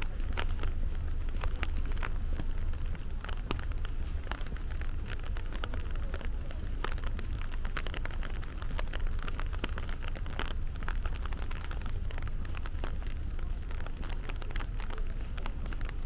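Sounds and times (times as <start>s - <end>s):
heavy rain falling: 0.0s - 16.0s
raindrops ticking close by: 0.0s - 16.0s.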